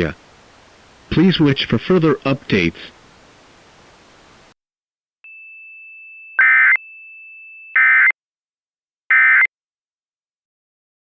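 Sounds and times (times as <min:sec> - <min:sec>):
faint steady high tone: 0:05.3 - 0:07.7.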